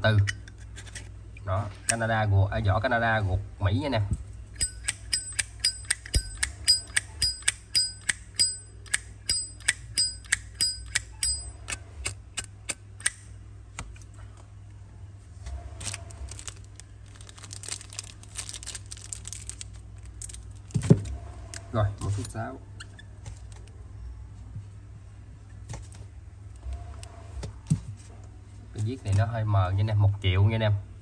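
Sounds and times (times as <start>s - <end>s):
handling noise: 15.3s - 22.3s.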